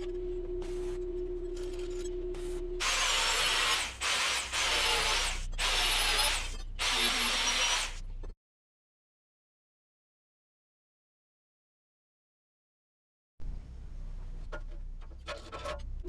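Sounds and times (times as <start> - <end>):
power tool bursts: 2.8 - 8.0.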